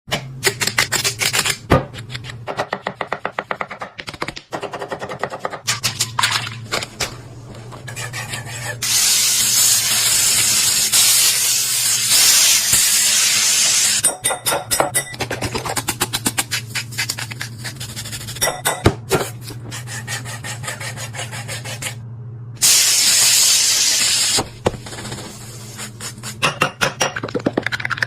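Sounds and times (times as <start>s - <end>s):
knife chopping on cutting board: 0.1s - 5.6s
food sizzling in hot pan: 8.8s - 14.0s.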